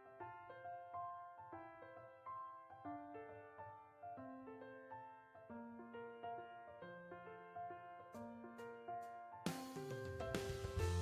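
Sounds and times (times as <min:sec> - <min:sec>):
slow gentle piano ballad: 0:00.0 - 0:11.0.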